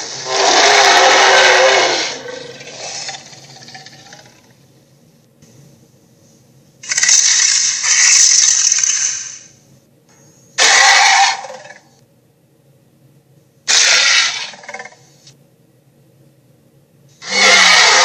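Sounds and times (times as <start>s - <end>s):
raspy monster roar: 0.0s - 4.4s, 13.7s - 15.0s, 17.2s - 18.0s.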